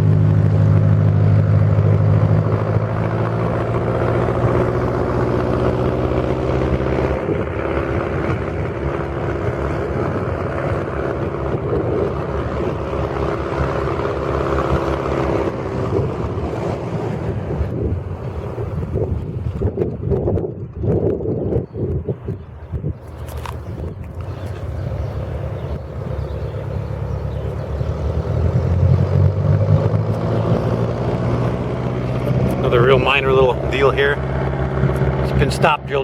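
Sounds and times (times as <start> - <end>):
motor engine running: 0.0 - 36.0
wind buffeting microphone: 0.0 - 36.0.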